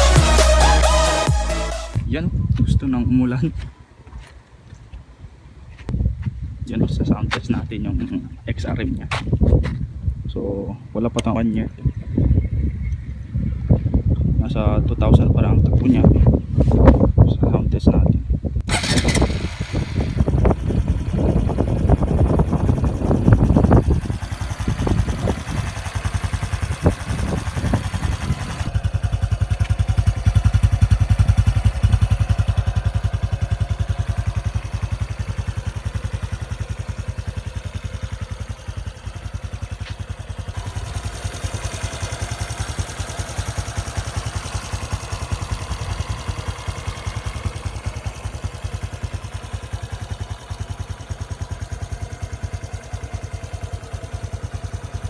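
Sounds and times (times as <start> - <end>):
motorcycle engine running: 0.0 - 2.7, 18.6 - 55.0.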